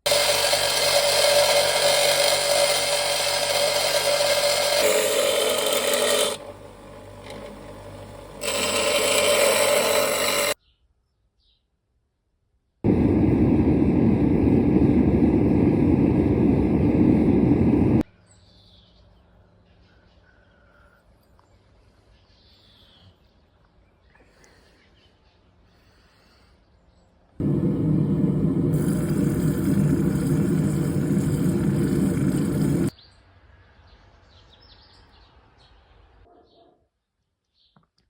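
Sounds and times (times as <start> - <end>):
coarse machine noise: 0.0 - 10.6, 12.9 - 18.0, 27.4 - 32.9
power tool whining: 0.0 - 10.6, 27.4 - 32.9.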